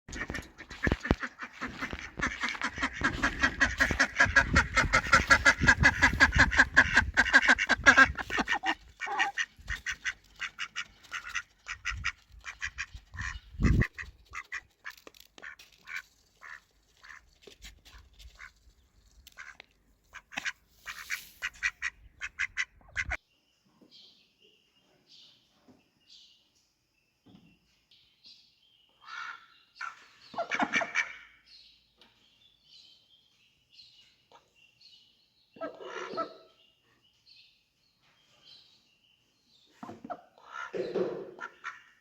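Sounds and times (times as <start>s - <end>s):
ducks quacking: 0.1s - 17.2s, 19.3s - 23.2s, 29.0s - 31.4s, 35.6s - 36.6s, 39.8s - 42.0s
duck bills pecking: 0.1s - 17.3s, 19.3s - 23.2s.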